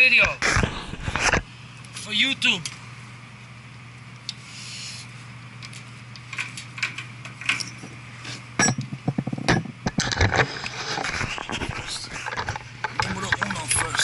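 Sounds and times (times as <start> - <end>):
steady low hum: 0.0 - 14.0
metal tools clinking: 7.4 - 8.0, 8.6 - 8.8.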